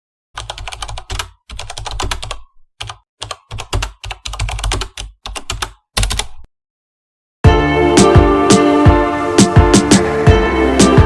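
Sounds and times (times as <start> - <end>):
computer keyboard typing: 0.4 - 6.5.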